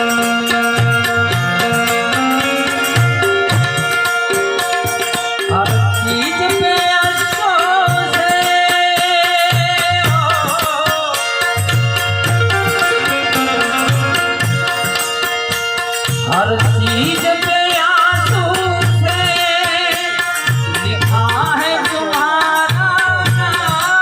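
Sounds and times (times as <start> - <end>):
harmonium chords: 0.0 - 24.0
sliding melody line: 12.2 - 15.8.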